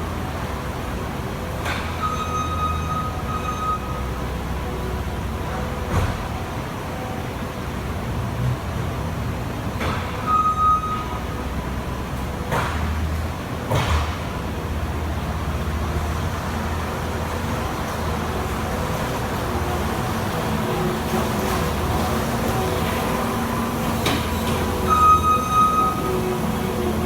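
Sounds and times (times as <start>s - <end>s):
diesel engine running: 11.4s - 27.0s.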